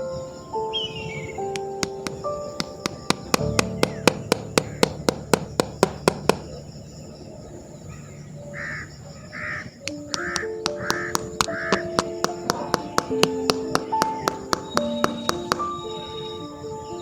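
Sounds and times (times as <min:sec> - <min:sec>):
music with clicking beat: 0:01.5 - 0:06.4, 0:09.9 - 0:15.7
bird rasping calls: 0:02.8 - 0:05.1, 0:08.6 - 0:15.8.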